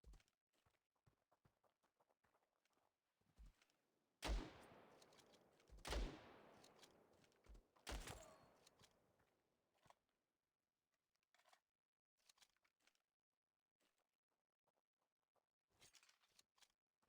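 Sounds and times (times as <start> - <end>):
sharp bangs with echo: 4.2 - 7.0.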